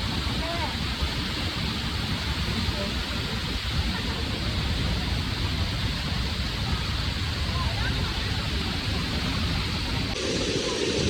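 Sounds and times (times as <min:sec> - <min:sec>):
waterfall rushing: 0:00.1 - 0:11.0.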